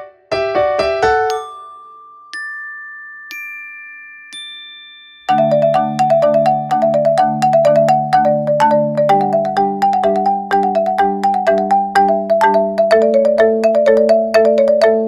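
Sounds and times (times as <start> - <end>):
mallet melody over low chords: 5.3 - 15.0.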